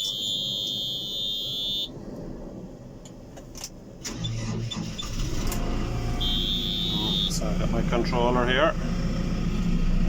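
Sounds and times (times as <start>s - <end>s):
high-pitched warning buzzer: 0.0s - 1.9s, 6.2s - 7.4s
diesel engine starting and running: 3.9s - 10.0s.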